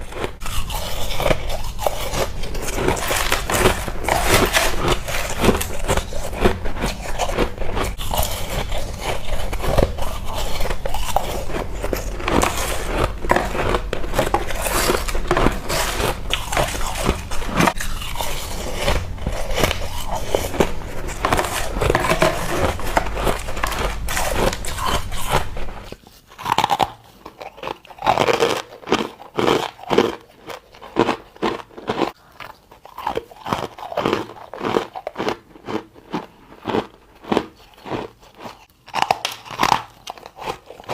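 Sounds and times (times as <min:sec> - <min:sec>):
steady low hum: 0:00.0 - 0:26.0
ice crunching: 0:00.0 - 0:26.8
quiet chewing: 0:00.0 - 0:40.9.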